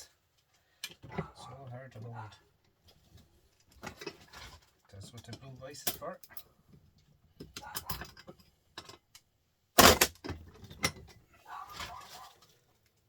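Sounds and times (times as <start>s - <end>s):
metal clicks and knocks: 7.4s - 11.2s
loud metal clank: 9.8s - 10.1s.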